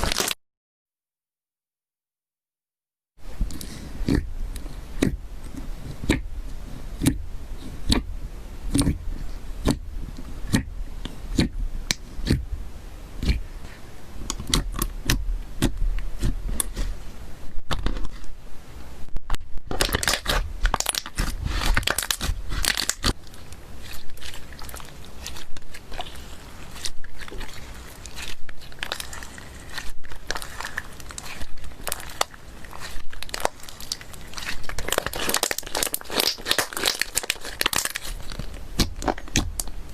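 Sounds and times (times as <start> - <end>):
slime squishing with sticky pops: 3.4 - 8.1, 8.7 - 12.5, 13.2 - 13.5, 14.2 - 17.0, 19.6 - 39.9.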